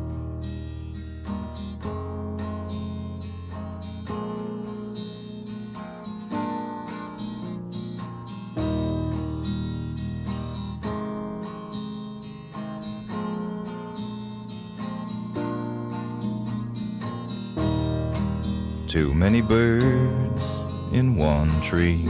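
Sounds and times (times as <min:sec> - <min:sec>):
acoustic guitar strumming: 0:00.0 - 0:22.0.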